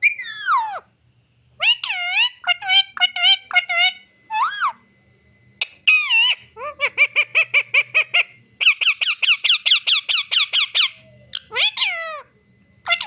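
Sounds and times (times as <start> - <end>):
parrot chirping: 0.0 - 0.9, 1.6 - 4.8, 5.6 - 13.0.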